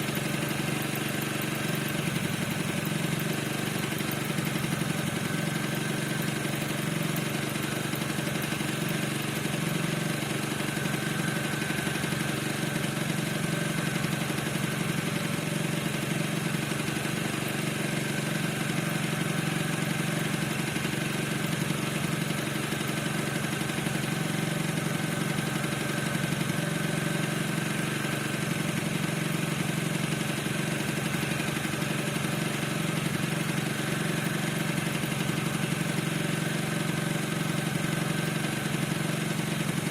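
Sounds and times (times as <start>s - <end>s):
scooter engine idling: 0.0s - 39.9s.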